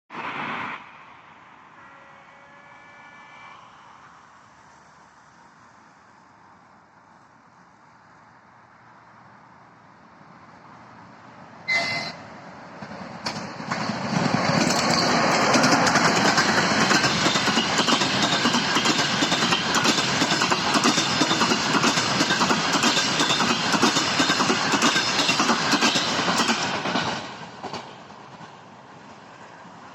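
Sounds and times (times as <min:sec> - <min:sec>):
train passing by: 0:00.1 - 0:29.9
train horn: 0:01.6 - 0:04.5, 0:11.7 - 0:12.3
wheels clacking over rail joints: 0:12.7 - 0:29.2.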